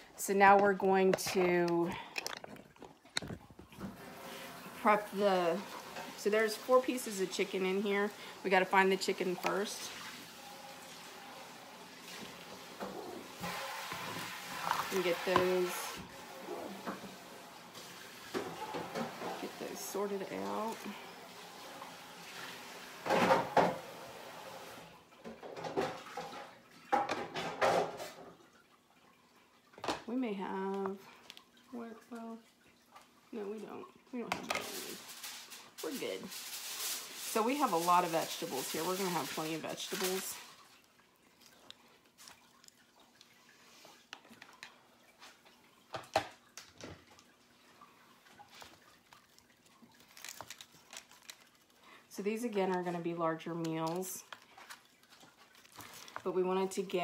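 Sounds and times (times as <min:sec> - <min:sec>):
dishes and utensils clattering: 0:25.3 - 0:28.3.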